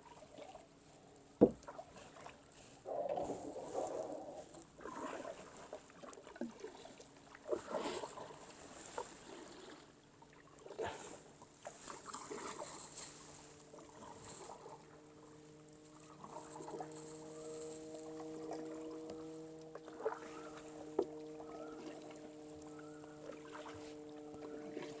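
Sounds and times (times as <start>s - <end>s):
paddle splashing in water: 1.4s - 25.0s
steady low drone: 13.2s - 25.0s.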